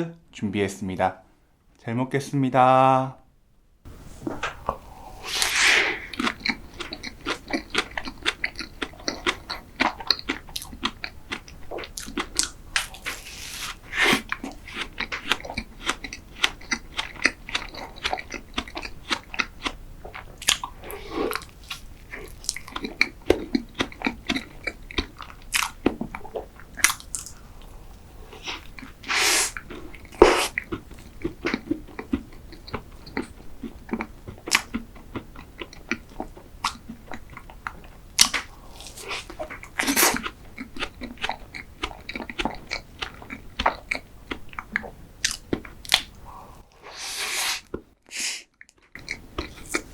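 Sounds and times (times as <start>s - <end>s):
person chewing: 3.9s - 49.9s
wet mouth smacks: 4.3s - 7.1s.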